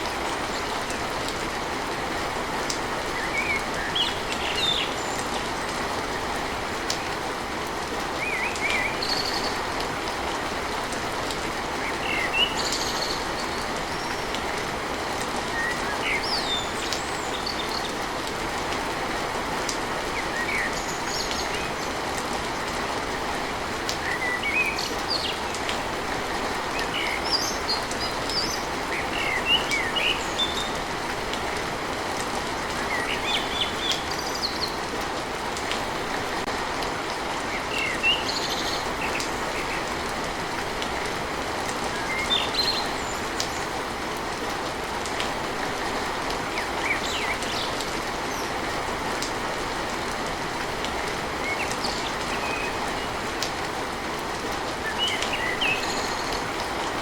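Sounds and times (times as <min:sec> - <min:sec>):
rain on a tin roof: 0:00.0 - 0:57.0
birds chirping: 0:32.4 - 0:35.0, 0:54.8 - 0:57.0.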